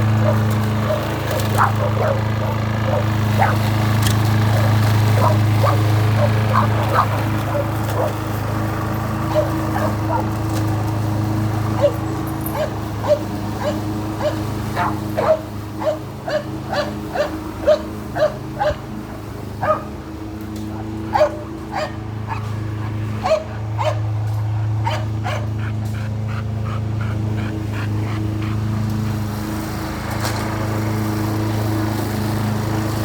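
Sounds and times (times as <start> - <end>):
lawn mower engine droning: 0.0 - 33.0
dog barking: 0.2 - 3.6, 4.5 - 8.2, 9.3 - 10.4, 11.8 - 18.8, 19.6 - 19.9, 20.6 - 28.6.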